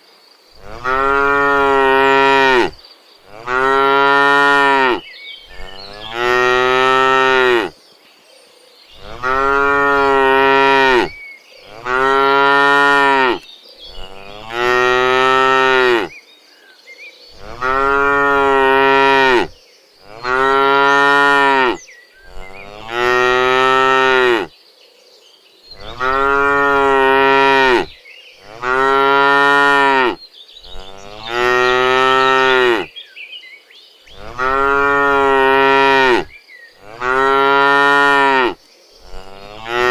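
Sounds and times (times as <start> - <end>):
cows mooing: 0.6 - 7.7, 9.0 - 16.1, 17.4 - 24.5, 25.8 - 32.9, 34.2 - 39.9.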